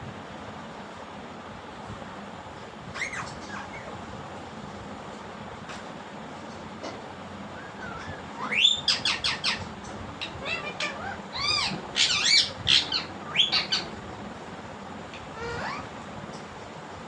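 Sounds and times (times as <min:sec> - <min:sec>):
parakeet squawking and chirping: 0:02.9 - 0:03.9, 0:07.6 - 0:14.0, 0:15.2 - 0:15.9.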